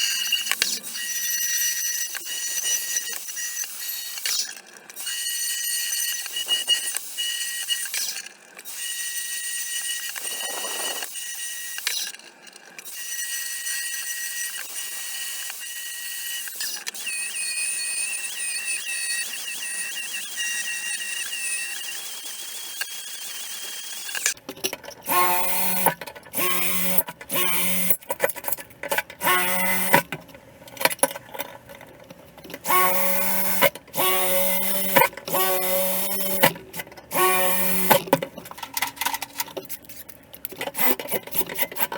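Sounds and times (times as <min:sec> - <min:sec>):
power tool high whine: 0:08.7 - 0:12.0, 0:13.0 - 0:24.4, 0:25.1 - 0:28.0, 0:29.2 - 0:30.0, 0:32.6 - 0:38.1
motor starting and stopping: 0:10.0 - 0:11.2, 0:25.1 - 0:28.1, 0:28.9 - 0:30.1, 0:32.6 - 0:38.2.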